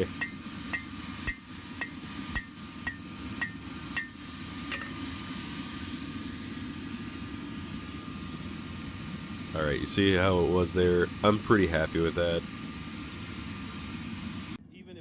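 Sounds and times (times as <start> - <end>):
hammer striking steel on anvil: 0.0 - 5.0.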